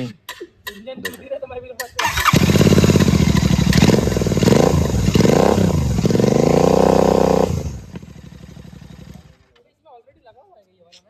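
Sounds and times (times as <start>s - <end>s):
motorcycle engine revving: 2.0s - 9.5s.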